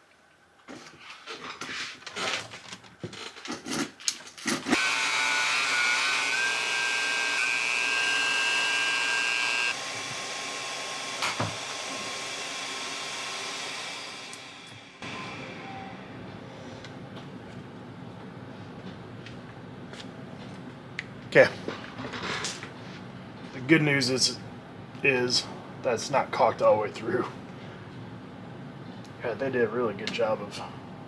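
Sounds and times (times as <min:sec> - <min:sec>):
power tool motor whine: 0:04.7 - 0:16.3.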